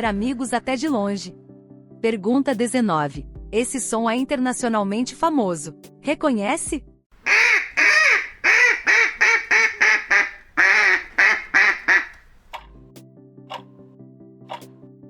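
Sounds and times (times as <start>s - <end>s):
duck quacking: 7.3s - 12.4s.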